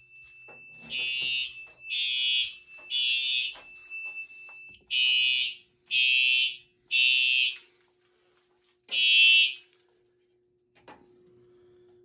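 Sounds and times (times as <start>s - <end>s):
fire alarm horn blasts: 0.0s - 7.7s, 8.9s - 9.7s.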